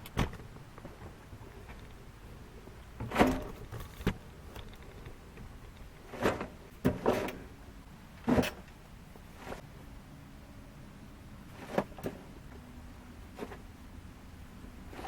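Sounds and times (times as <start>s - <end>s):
shovels scraping into soil: 3.0s - 3.9s, 6.0s - 7.5s, 8.2s - 8.7s, 9.3s - 9.7s, 11.5s - 12.3s, 13.3s - 13.7s.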